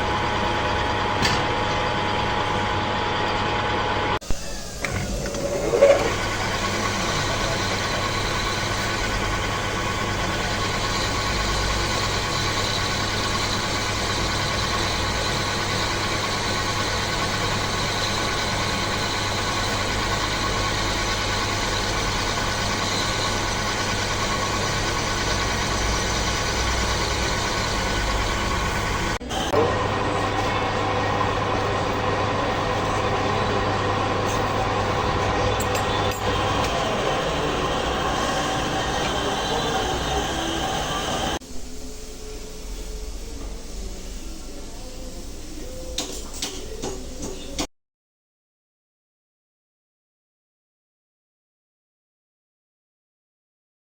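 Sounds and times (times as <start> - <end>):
metal lathe running: 0.0 - 41.5
lathe spindle whine: 0.0 - 45.7.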